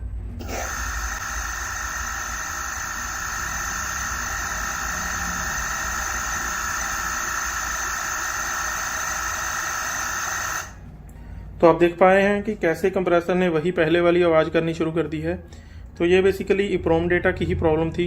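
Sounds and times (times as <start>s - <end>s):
steady high-pitched whine: 0.0s - 11.4s
air conditioner compressor running: 0.0s - 12.7s.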